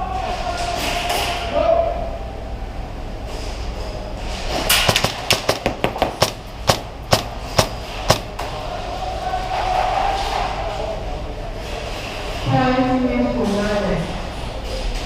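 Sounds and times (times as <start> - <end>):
airsoft gun shots: 4.7 - 8.3.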